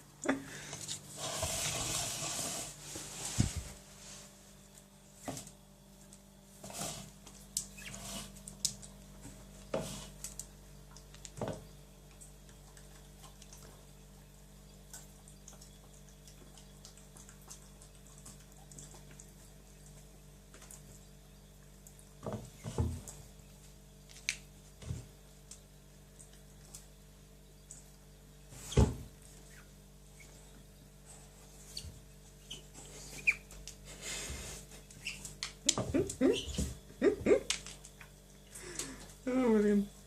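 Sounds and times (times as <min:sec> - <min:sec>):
wet squeaks and clicks: 0:07.5 - 0:09.0, 0:31.6 - 0:33.8, 0:34.8 - 0:38.2.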